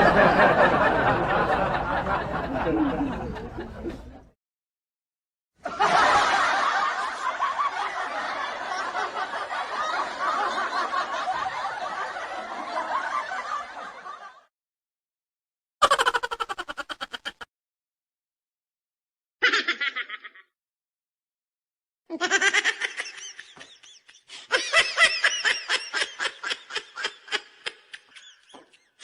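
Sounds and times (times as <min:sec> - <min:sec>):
stock laughter: 0:00.0 - 0:04.3, 0:05.6 - 0:14.5, 0:15.8 - 0:17.5, 0:19.4 - 0:20.5, 0:22.1 - 0:29.0.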